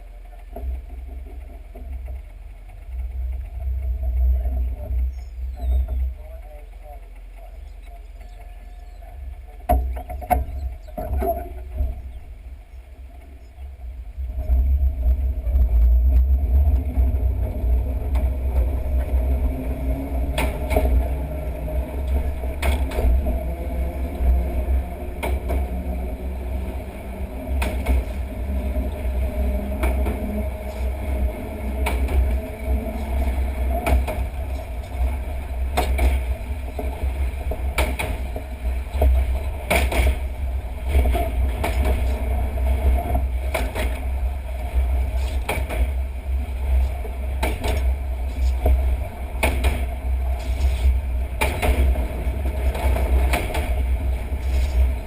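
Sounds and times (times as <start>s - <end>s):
train rumbling along track: 0.0s - 55.0s
wheel knocks on rail joints: 22.0s - 23.4s, 27.5s - 31.1s, 31.7s - 44.2s, 45.2s - 46.0s, 46.8s - 50.5s, 51.2s - 54.1s.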